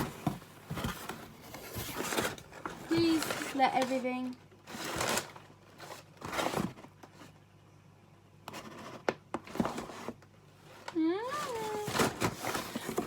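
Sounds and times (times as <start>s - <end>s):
packaging rustling: 0.0s - 6.8s, 10.8s - 13.0s.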